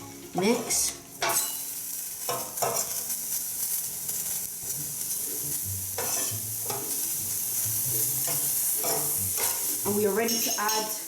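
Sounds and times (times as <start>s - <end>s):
meat sizzling in oil: 0.5s - 11.0s
utensil scraping a pan: 5.1s - 7.0s.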